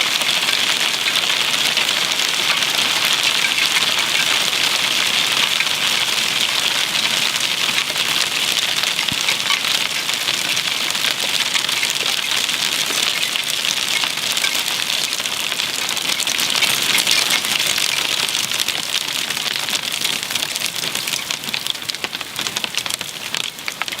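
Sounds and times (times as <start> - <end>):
hail and rain pelting down: 0.0 - 24.0.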